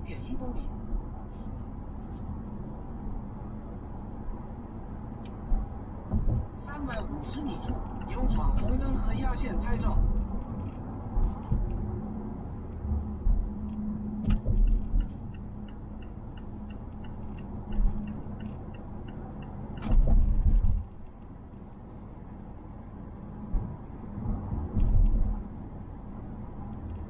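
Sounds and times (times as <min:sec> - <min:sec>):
road and engine rumble: 0:00.0 - 0:27.0
turn-signal relay ticking: 0:15.2 - 0:19.9.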